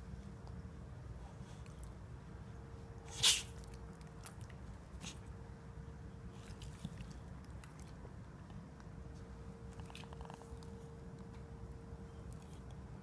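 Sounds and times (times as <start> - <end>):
dog sneezing: 3.0 - 3.6.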